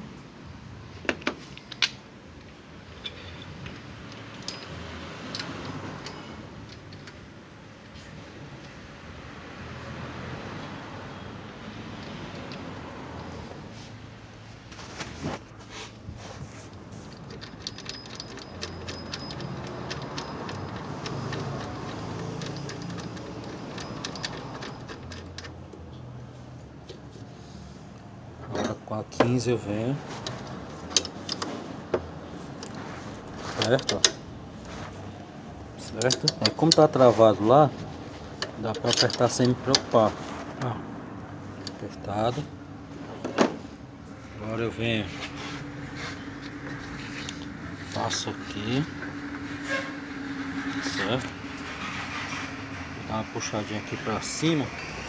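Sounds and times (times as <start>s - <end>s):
metal tools clinking: 2.9s - 7.3s, 16.4s - 25.6s, 32.6s - 34.9s, 35.8s - 37.4s, 38.3s - 40.2s.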